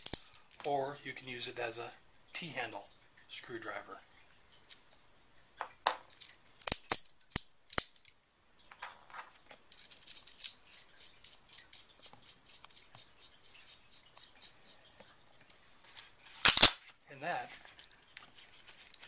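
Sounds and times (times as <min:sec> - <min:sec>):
rustling: 0:08.0 - 0:19.0.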